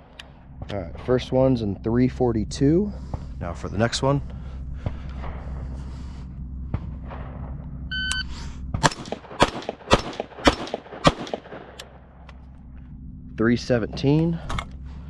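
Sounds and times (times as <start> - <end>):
shot timer beep: 7.9 - 8.3
rifle gunshots: 8.8 - 12.0.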